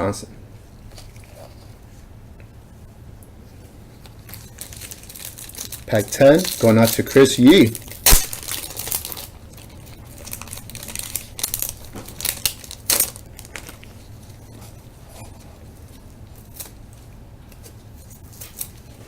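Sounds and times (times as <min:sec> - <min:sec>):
wrapper tearing and crinkling: 0:04.1 - 0:14.1.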